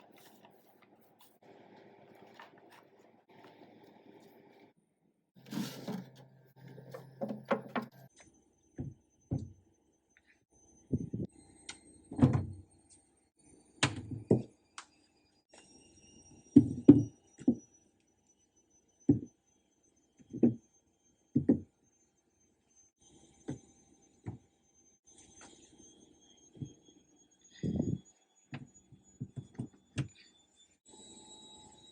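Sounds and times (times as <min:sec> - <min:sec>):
items thunking as set down: 0:05.4 - 0:08.1.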